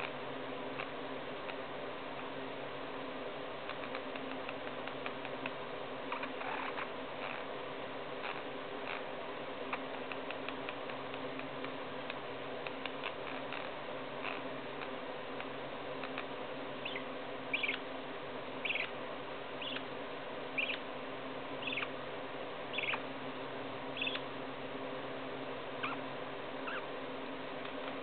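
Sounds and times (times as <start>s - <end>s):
steady background hum: 0.0s - 28.0s
parakeet chirping: 6.1s - 7.4s, 16.1s - 17.8s, 18.6s - 19.0s, 19.6s - 19.9s, 20.6s - 20.8s, 21.6s - 21.9s, 22.7s - 23.1s, 24.0s - 24.3s, 25.8s - 26.0s, 26.6s - 26.9s.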